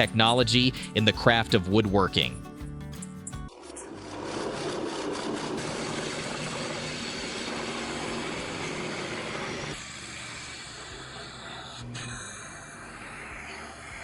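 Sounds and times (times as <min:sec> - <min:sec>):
wood-cutting machine grinding: 0:03.5 - 0:11.9.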